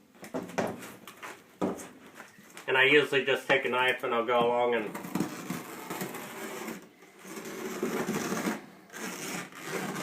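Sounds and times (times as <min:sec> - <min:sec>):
knife cutting window screen: 0:05.0 - 0:10.0.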